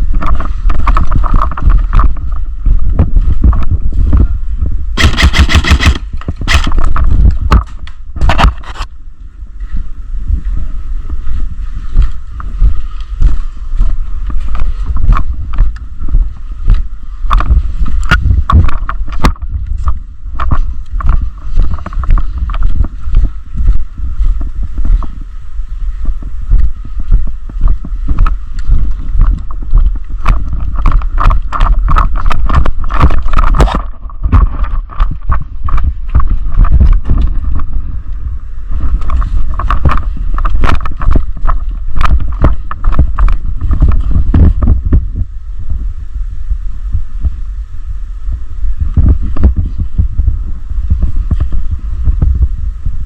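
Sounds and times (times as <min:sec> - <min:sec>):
wind buffeting microphone: 0:00.0 - 0:53.0
sharp clicks and knocks: 0:05.0 - 0:08.9.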